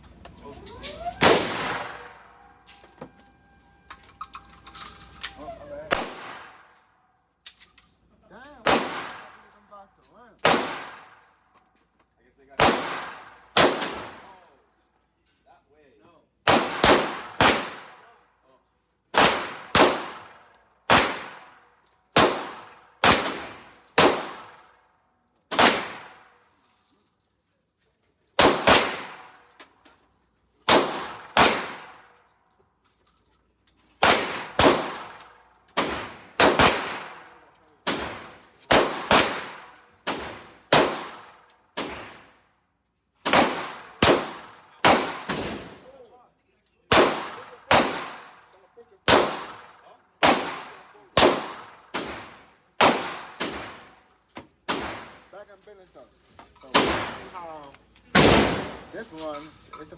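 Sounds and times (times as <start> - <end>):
gunshots with echo: 1.2 - 2.2, 5.9 - 6.7, 8.6 - 9.4, 10.4 - 11.2, 12.6 - 14.2, 16.5 - 18.0, 28.4 - 29.2, 30.7 - 32.0, 34.0 - 35.2, 35.8 - 37.3, 37.9 - 42.2, 43.3 - 45.8, 46.9 - 48.4, 49.1 - 53.8, 58.1 - 58.9.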